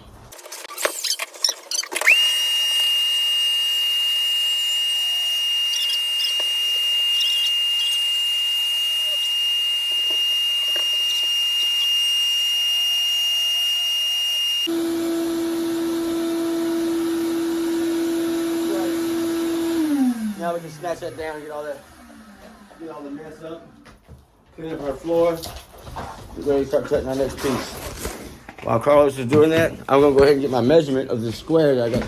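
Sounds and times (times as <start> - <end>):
power tool lower hum: 2.0 - 23.1
power tool high-pitched whine: 2.0 - 23.2.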